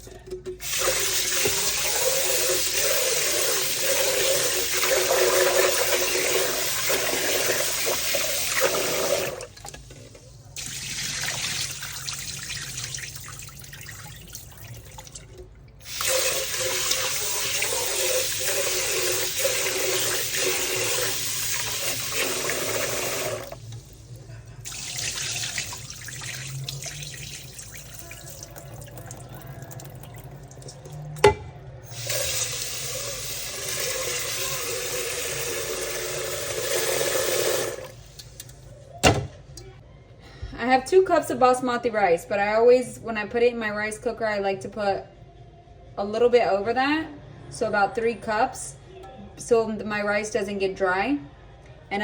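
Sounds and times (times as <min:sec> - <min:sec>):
kitchen tap running into pot: 0:00.6 - 0:38.6.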